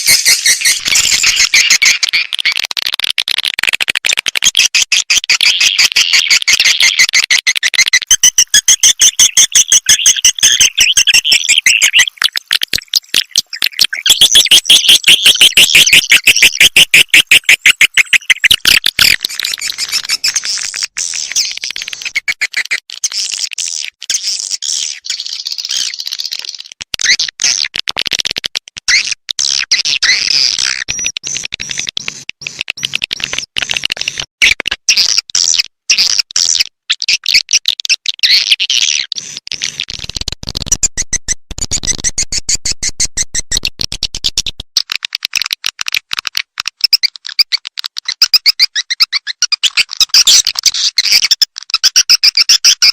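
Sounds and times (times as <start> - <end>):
rapid bird twittering chirps: 0.0 - 2.6, 4.5 - 27.6, 40.6 - 44.6, 46.8 - 52.9.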